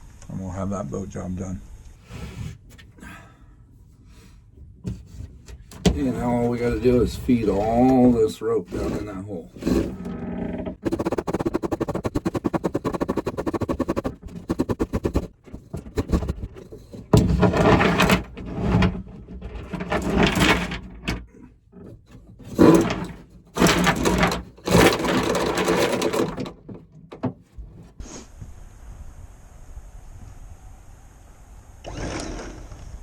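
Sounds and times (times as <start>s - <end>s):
anchor rode scraping: 4.9s - 27.9s
anchor chain rattling: 22.4s - 26.6s.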